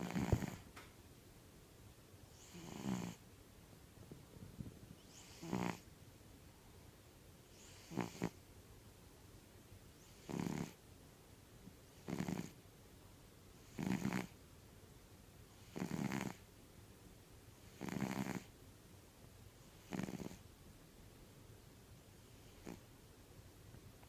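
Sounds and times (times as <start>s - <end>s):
cat snoring: 0.0s - 0.7s, 2.3s - 3.2s, 5.0s - 5.8s, 7.5s - 8.4s, 10.0s - 10.8s, 12.0s - 12.6s, 13.6s - 14.4s, 15.5s - 16.4s, 17.6s - 18.5s, 19.6s - 20.4s, 22.2s - 22.8s.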